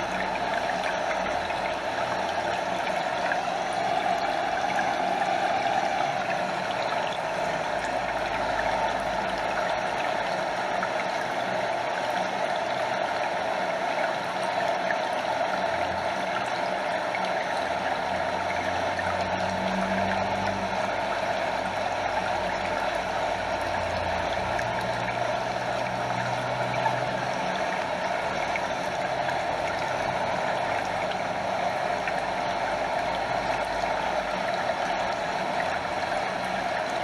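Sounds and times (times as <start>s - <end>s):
water lapping: 0.0s - 16.2s
water rushing over waterfall: 0.0s - 37.0s.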